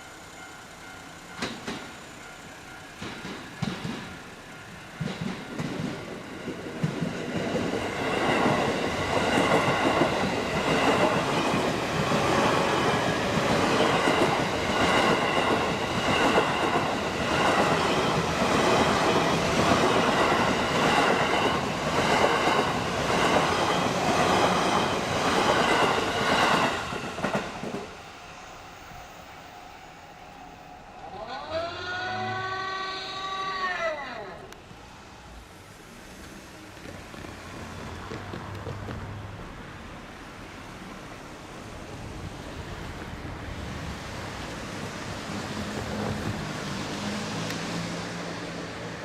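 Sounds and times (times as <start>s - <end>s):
train wheels clacking over rail joints: 1.3s - 4.3s, 5.0s - 27.9s.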